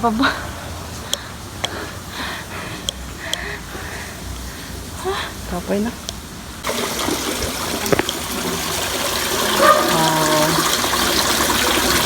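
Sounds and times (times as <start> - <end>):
water rushing: 6.3 - 12.0.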